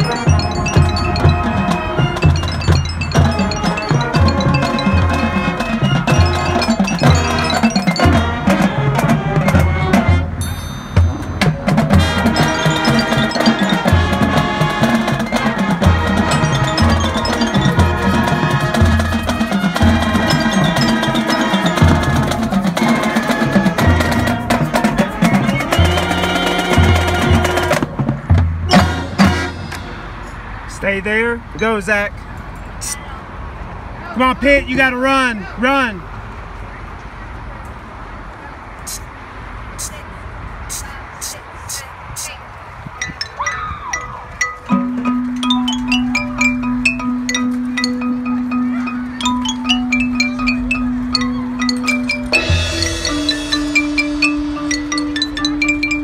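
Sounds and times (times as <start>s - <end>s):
glockenspiel and marimba: 0.0s - 27.6s, 43.0s - 56.0s
drums: 0.0s - 31.8s, 42.9s - 56.0s
marching band music: 0.0s - 36.4s, 43.0s - 56.0s.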